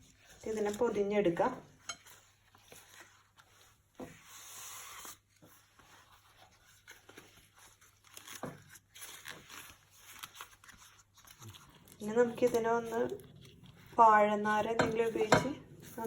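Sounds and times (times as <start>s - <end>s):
leaf rustling and crinkling: 4.4s - 14.5s.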